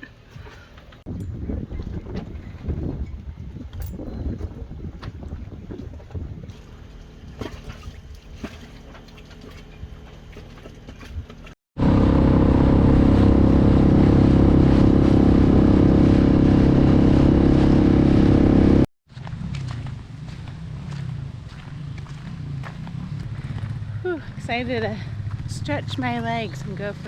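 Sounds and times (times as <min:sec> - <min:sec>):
wind: 0:00.0 - 0:27.0
water noise: 0:04.4 - 0:18.9
motor running loud: 0:11.8 - 0:18.9.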